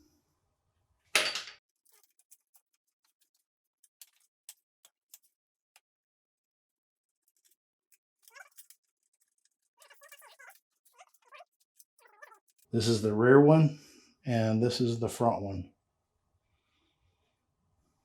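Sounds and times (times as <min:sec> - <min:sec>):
metal parts scraping: 0:08.2 - 0:12.7.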